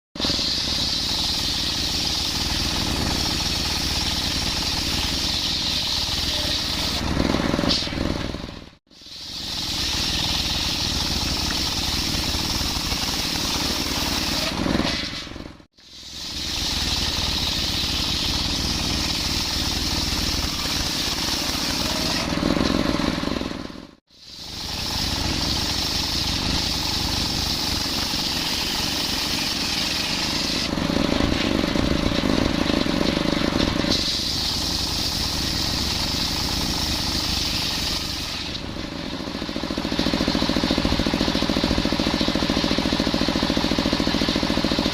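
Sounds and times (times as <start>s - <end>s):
circular saw cutting wood: 0.2s - 44.9s.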